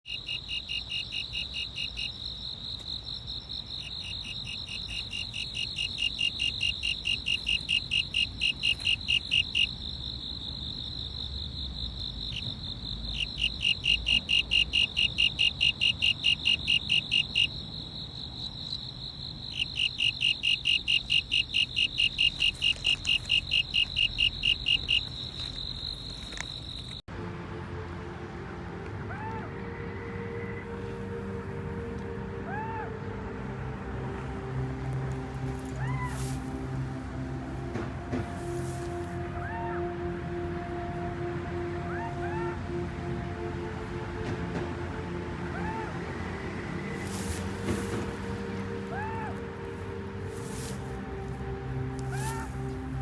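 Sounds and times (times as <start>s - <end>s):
insect high trill: 0.1s - 27.0s
insect pulsed chirping: 0.1s - 27.0s.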